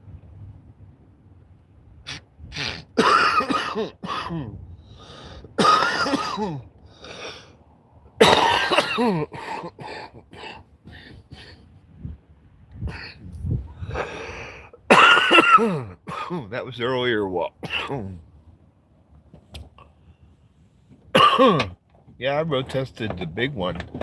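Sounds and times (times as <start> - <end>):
man clearing his throat: 2.5 - 4.6, 5.6 - 6.7, 8.2 - 10.6, 14.9 - 16.5, 17.6 - 18.2, 21.1 - 21.8
man coughing: 2.6 - 4.6, 5.6 - 7.3, 8.2 - 11.6, 14.9 - 16.5, 17.6 - 18.2, 21.1 - 21.8.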